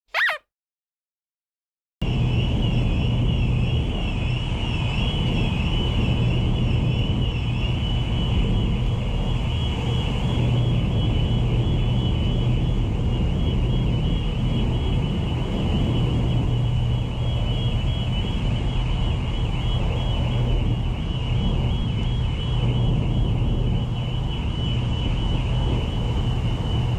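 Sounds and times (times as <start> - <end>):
high wavering whistle: 0.1 - 0.4
wind noise: 2.2 - 26.9.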